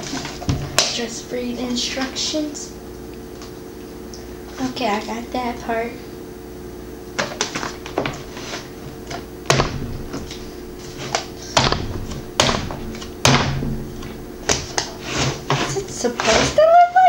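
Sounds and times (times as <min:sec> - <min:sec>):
plastic thunks: 0:09.1 - 0:15.8.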